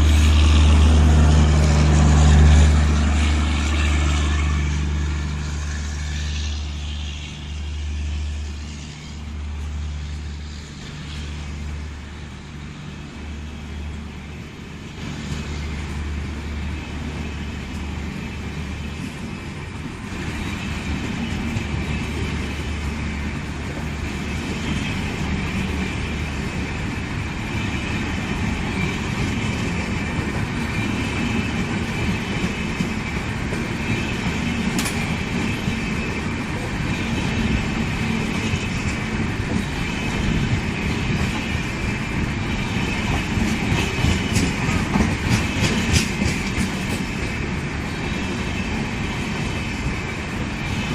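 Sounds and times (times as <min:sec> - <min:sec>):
train wheels clattering on rails: 0:13.8 - 0:50.9.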